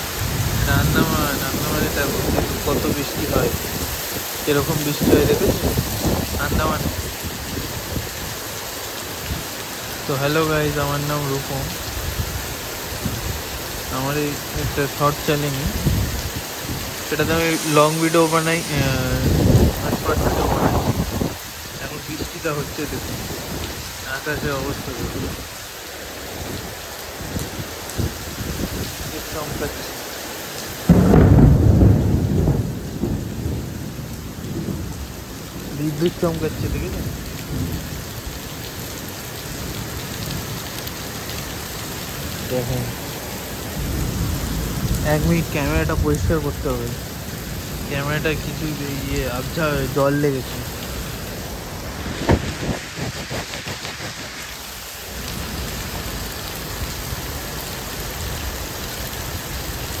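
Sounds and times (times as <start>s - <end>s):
heavy rain: 0.0s - 60.0s
thunder crack and rumble: 0.2s - 3.9s, 4.7s - 8.2s, 18.3s - 22.2s, 30.8s - 38.5s, 50.6s - 57.3s
rubbing on camera lens: 52.0s - 54.8s.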